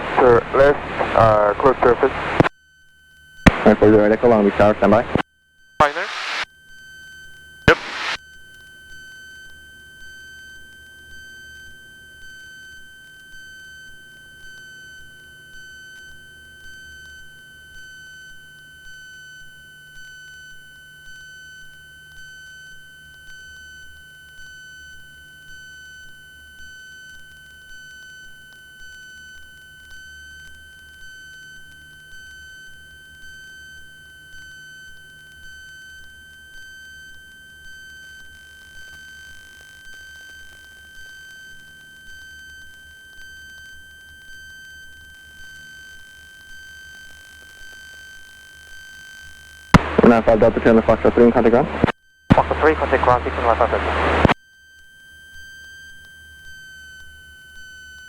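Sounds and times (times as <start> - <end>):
low hum: 49.8 - 54.4.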